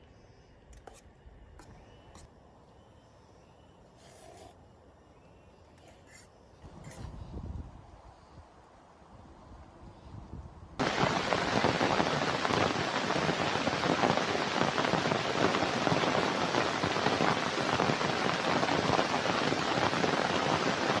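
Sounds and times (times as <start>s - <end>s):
heavy rain falling: 10.8s - 21.0s.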